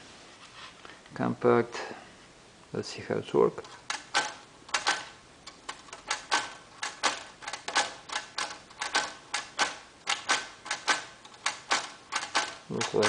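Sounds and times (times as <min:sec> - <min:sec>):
typewriter clacking: 0:03.6 - 0:13.0.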